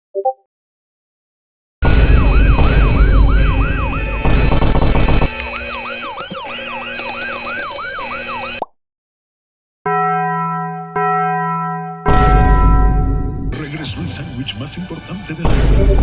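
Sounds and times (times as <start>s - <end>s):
siren wailing: 1.9s - 8.7s.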